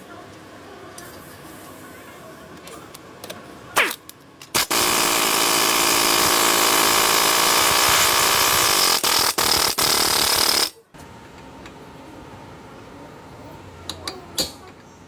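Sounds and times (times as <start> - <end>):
power tool buzzing: 4.6 - 10.8.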